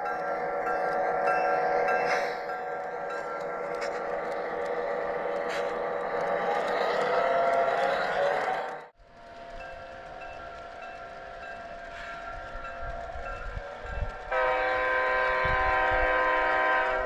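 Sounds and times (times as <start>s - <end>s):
locomotive bell ringing: 0.0s - 8.4s, 9.2s - 15.3s
loud air horn blast: 14.3s - 17.0s.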